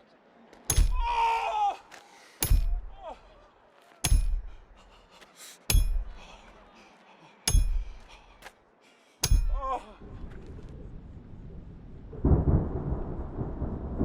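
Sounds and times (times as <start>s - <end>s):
hammer striking metal nail: 2.4s - 2.8s, 4.0s - 4.4s, 5.7s - 6.1s, 7.5s - 7.9s, 9.2s - 9.6s.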